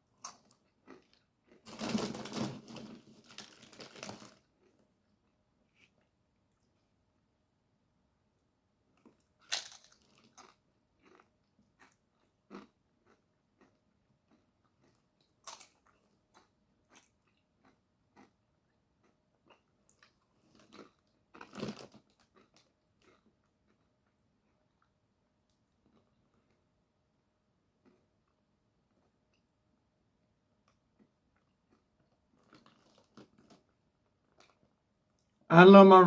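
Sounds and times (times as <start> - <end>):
person chewing crunchy food: 0.2 - 2.0, 9.0 - 24.9, 31.0 - 34.6.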